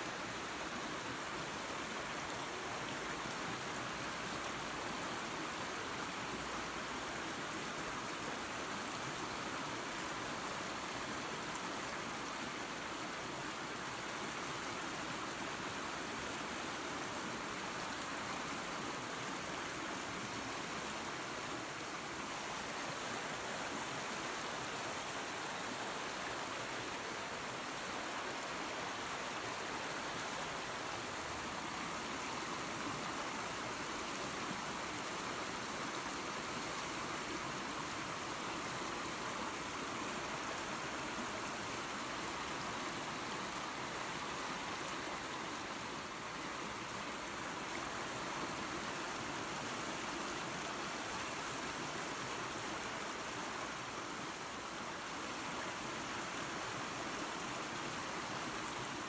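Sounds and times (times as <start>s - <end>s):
small waterfall and creek rushing: 0.0s - 59.0s.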